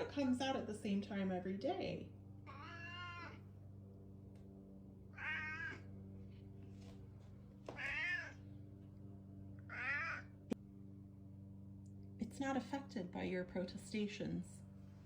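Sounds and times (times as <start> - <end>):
steady low hum: 0.0 - 15.0
cat meowing: 2.5 - 3.4, 5.1 - 5.9, 7.8 - 8.4, 9.7 - 10.3.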